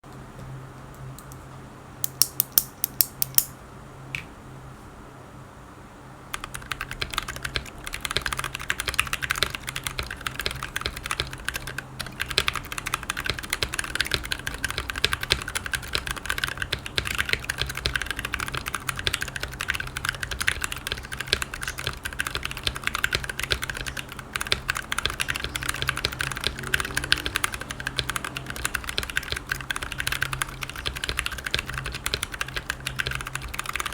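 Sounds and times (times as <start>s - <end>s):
low steady hum: 0.0s - 33.9s
mechanical keyboard typing: 2.0s - 3.5s, 6.3s - 33.9s
sharp key clicks: 2.0s - 3.6s.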